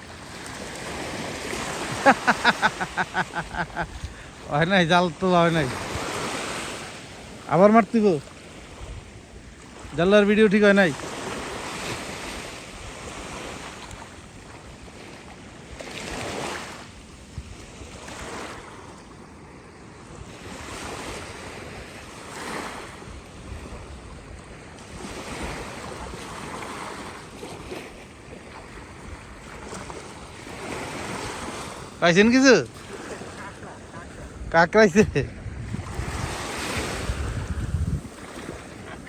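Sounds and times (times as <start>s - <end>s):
sea waves washing: 0.0s - 39.0s
wind buffeting microphone: 0.8s - 6.4s, 32.8s - 39.0s.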